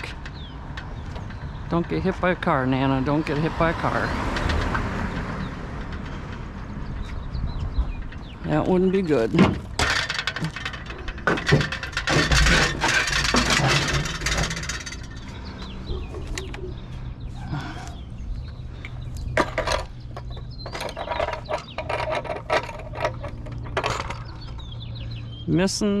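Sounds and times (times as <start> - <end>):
vehicle engine hum: 0.0 - 26.0
trash can items rustling and clattering: 4.1 - 16.8, 19.3 - 24.9.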